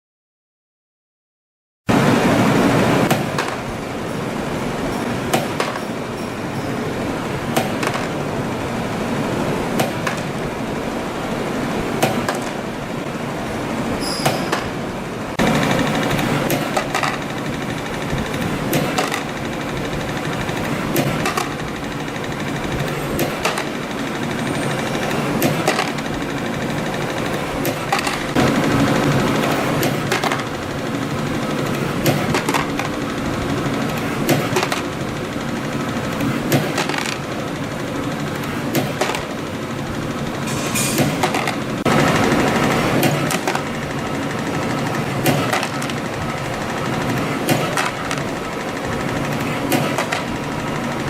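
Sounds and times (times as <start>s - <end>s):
spring coiling machine running: 1.9s - 51.0s
sharp machine clicks: 2.3s - 51.0s
sharp clicks of spring cutting: 14.2s - 24.3s, 31.6s - 35.0s, 40.4s - 50.9s.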